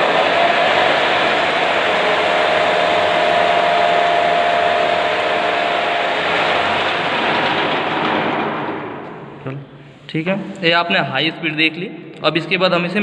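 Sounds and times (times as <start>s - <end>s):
lathe whine: 0.0s - 9.1s
lathe motor whirring: 0.0s - 9.2s.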